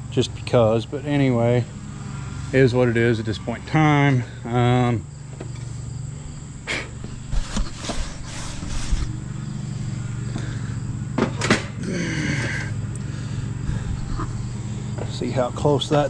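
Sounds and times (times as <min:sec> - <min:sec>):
engine idling: 0:00.0 - 0:07.6, 0:08.6 - 0:16.0
sharp knocks and clatters: 0:11.2 - 0:11.8.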